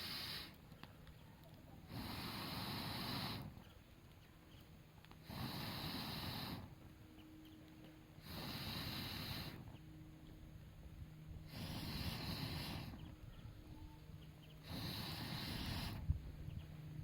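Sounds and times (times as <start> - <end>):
noisy breath-like puffs: 0.0 - 1.1, 1.7 - 3.9, 5.2 - 6.9, 8.2 - 9.8, 11.4 - 17.0.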